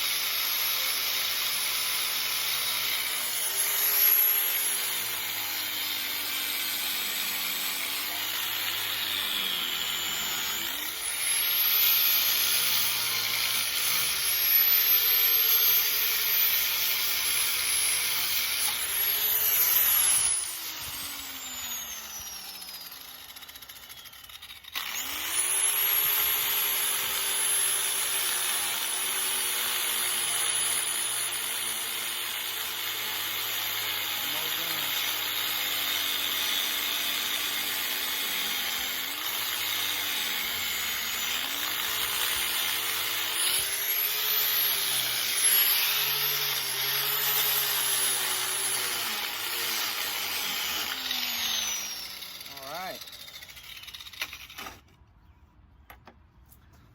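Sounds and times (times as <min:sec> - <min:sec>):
angle grinder grinding metal: 0:00.0 - 0:54.9.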